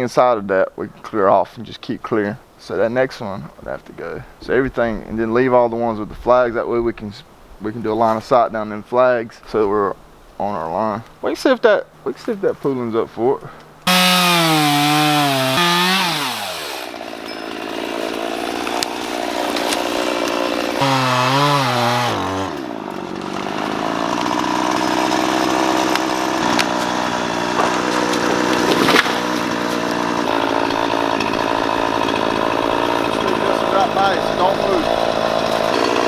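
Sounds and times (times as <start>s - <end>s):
chainsaw revving: 13.8s - 36.0s
sharp crack: 18.6s - 24.3s, 25.8s - 30.0s.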